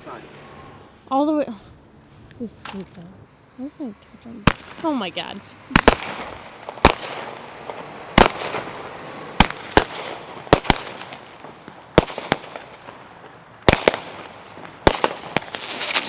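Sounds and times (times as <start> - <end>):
fireworks bangs: 4.4 - 16.0.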